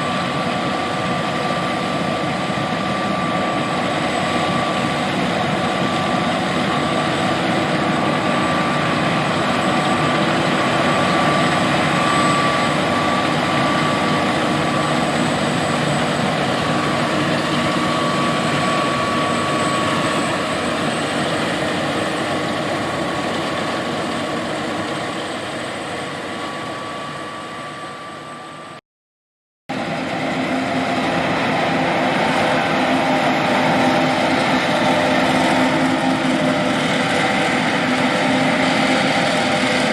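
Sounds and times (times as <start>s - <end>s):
combine harvester drone and whine: 0.0s - 28.8s, 29.7s - 39.9s.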